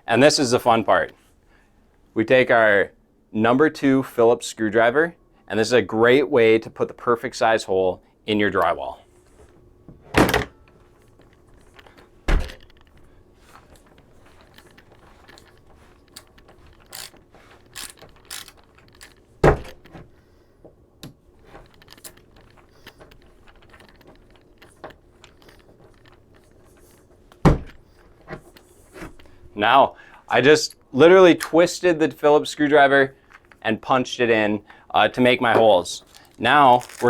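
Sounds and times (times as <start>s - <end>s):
faint crunching and clicking: 10.6s - 20.3s, 21.3s - 29.4s, 32.6s - 34.8s, 35.6s - 37.0s.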